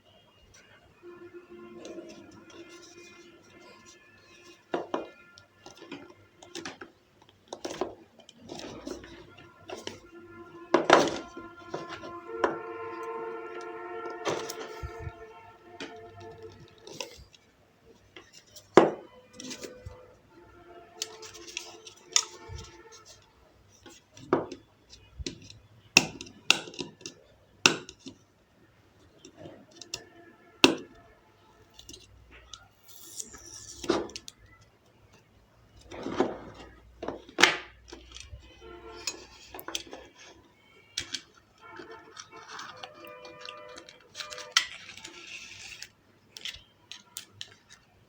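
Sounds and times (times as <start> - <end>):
background music: 0.0 - 23.6, 29.8 - 45.8
packaging clicks and knocks: 1.8 - 17.4, 18.2 - 20.2, 33.2 - 47.9.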